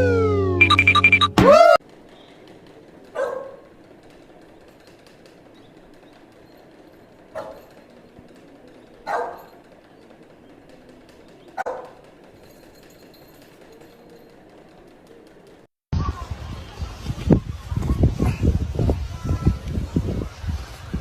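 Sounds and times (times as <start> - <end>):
dog barking: 3.2 - 3.6, 7.3 - 7.7, 9.0 - 9.6, 11.6 - 12.0.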